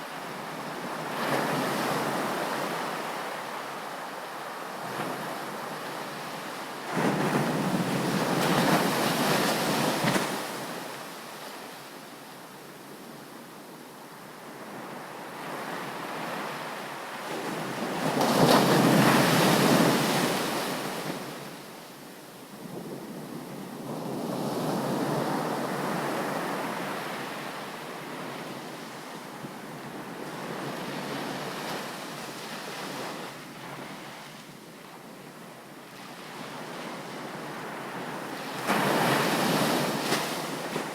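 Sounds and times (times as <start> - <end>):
ocean waves breaking on beach: 36.0 - 40.9.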